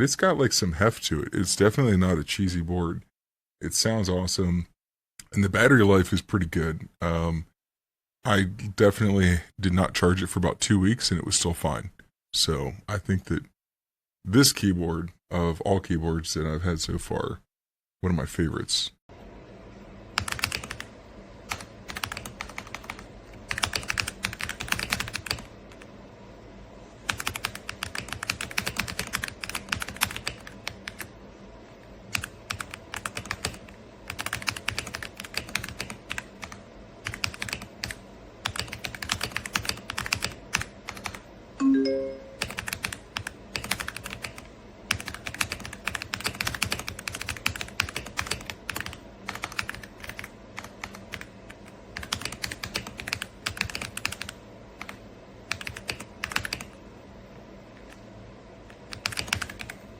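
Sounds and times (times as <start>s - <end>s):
mechanical keyboard typing: 20.2s - 20.9s, 21.5s - 25.9s, 27.1s - 31.1s, 32.1s - 41.2s, 42.4s - 56.8s, 58.7s - 59.8s
short pitched tone: 41.6s - 42.5s.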